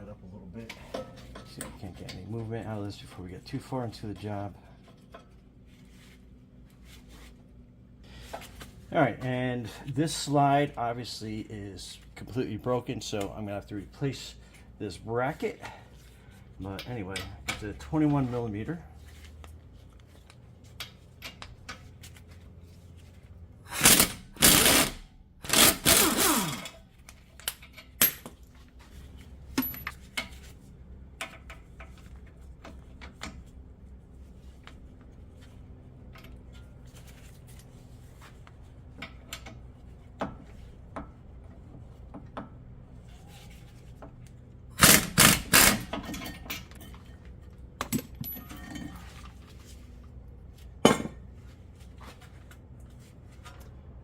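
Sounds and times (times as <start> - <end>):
impact wrench bursts: 23.7 - 26.8, 44.7 - 46.2
tools clinking: 44.8 - 49.3.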